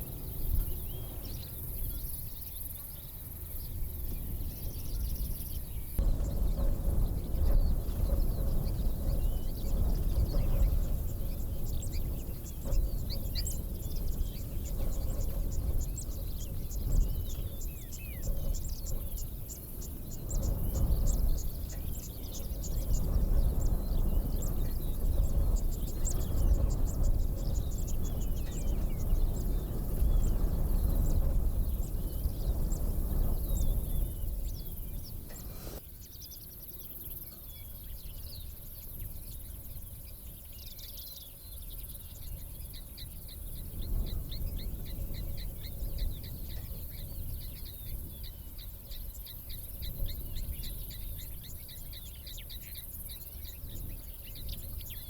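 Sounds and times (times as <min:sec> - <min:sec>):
insects chirring: 0:00.0 - 0:35.8
birds chirping and trilling: 0:00.0 - 0:36.5
low rumble: 0:22.4 - 0:35.8.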